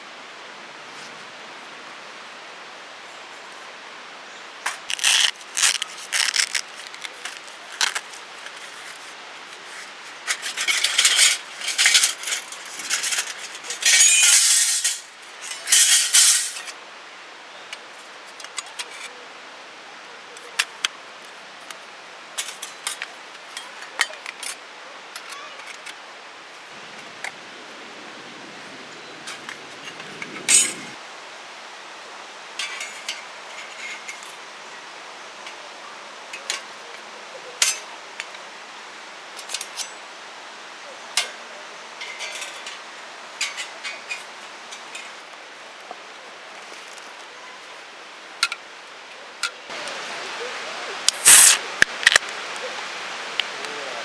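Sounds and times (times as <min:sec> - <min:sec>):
rustling: 0:04.6 - 0:16.8, 0:51.1 - 0:52.2
metal cookware clinking: 0:10.6 - 0:16.7.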